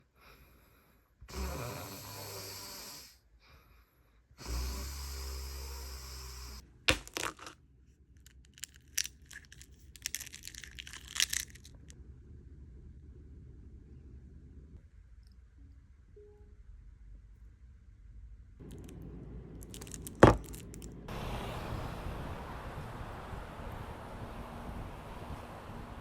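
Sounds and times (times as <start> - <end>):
man snoring: 1.3 - 3.2, 4.4 - 6.6
short clicks and crackles: 8.2 - 11.9.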